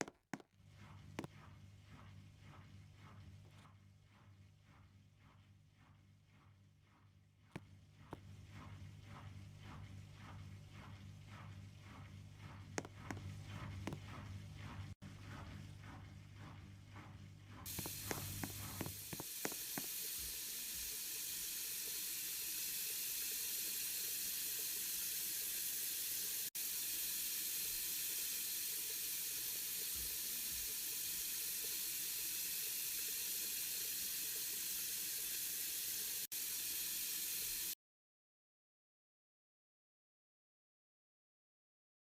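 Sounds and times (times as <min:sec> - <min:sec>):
water rushing into washing machine: 0:17.6 - 0:37.8.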